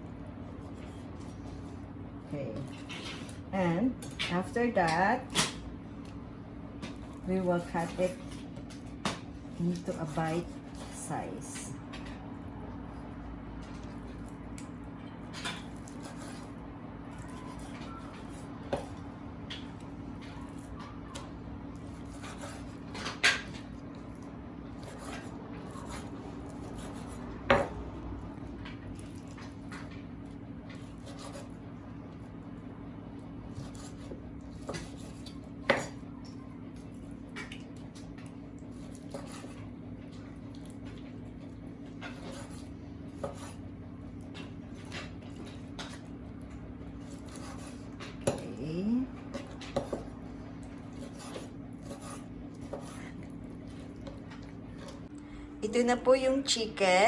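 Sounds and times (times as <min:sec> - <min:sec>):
steady low hum: 0:00.0 - 0:57.0
knife cutting on cutting board: 0:22.0 - 0:22.8, 0:30.8 - 0:31.6, 0:38.7 - 0:39.6, 0:42.1 - 0:43.6, 0:47.1 - 0:48.4, 0:50.8 - 0:53.2.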